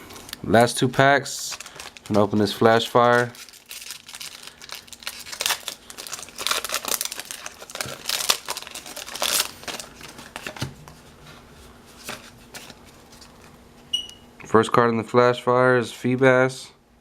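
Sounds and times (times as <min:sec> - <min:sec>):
foil wrapper tearing and crinkling: 0:01.4 - 0:10.7.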